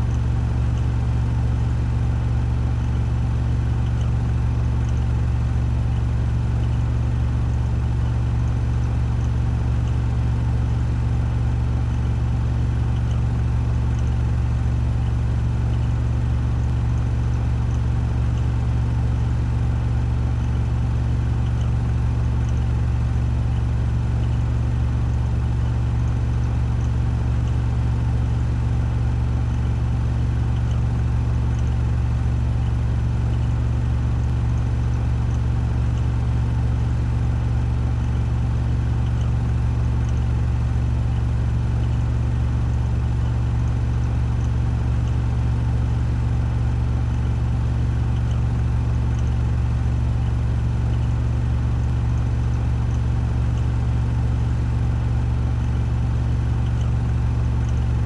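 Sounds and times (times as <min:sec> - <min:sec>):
washing machine spinning: 0:47.7 - 0:58.0.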